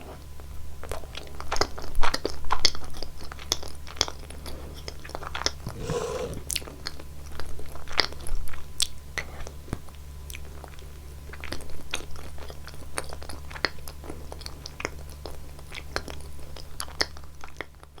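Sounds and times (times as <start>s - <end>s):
wet mouth clicks: 5.7s - 6.5s.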